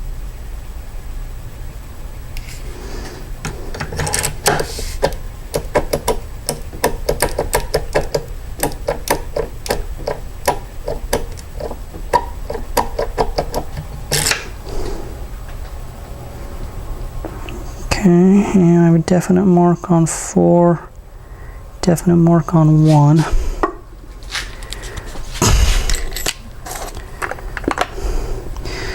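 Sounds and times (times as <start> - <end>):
key scraping: 2.4 - 15.8, 24.2 - 27.5.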